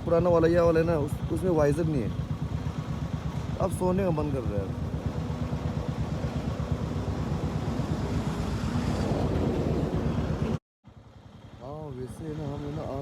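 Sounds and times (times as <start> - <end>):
motorcycle engine running: 0.0 - 13.0
wind noise on microphone: 7.3 - 10.6.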